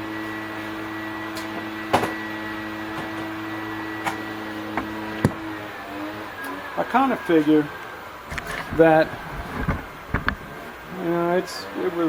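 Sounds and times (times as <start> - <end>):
steady machine hum: 0.0 - 12.0
power plug clicks and knocks: 8.3 - 10.5.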